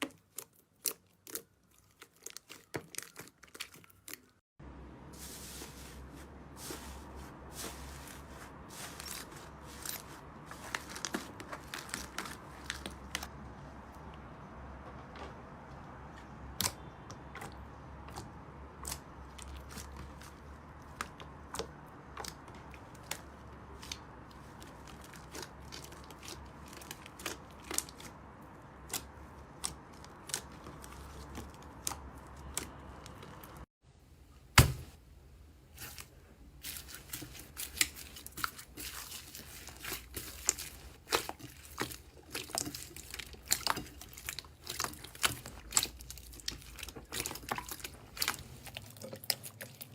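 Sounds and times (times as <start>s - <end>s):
slime clicking and crackling: 0.0s - 4.4s, 16.6s - 33.6s, 36.6s - 49.9s
loud pop: 34.6s - 35.0s.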